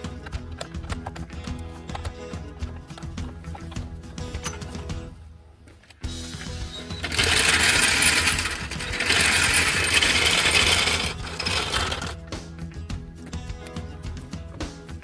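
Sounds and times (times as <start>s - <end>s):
background music: 0.0s - 15.0s
harsh metalworking noise: 6.2s - 12.2s.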